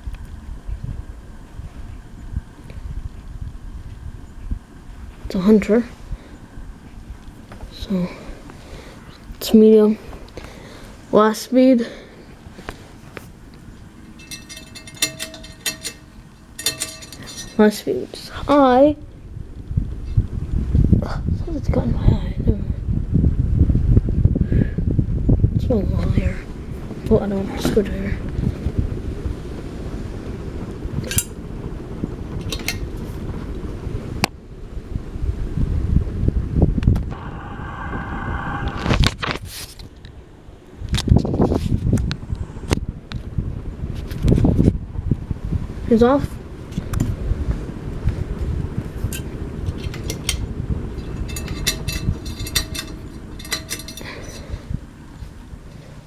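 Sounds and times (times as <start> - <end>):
ceiling fan airflow rumble: 0.0 - 56.0
light clicks and clinks: 14.1 - 17.9, 49.1 - 54.6.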